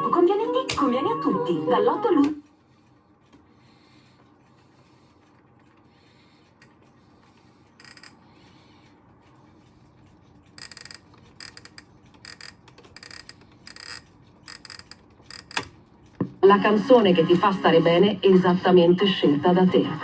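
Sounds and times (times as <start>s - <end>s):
clock mechanism clicking and rattling: 7.8s - 8.2s, 10.4s - 16.2s.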